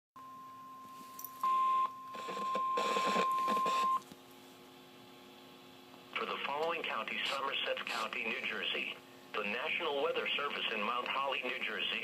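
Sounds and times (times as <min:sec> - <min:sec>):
steady alarm beep: 0:00.2 - 0:04.0.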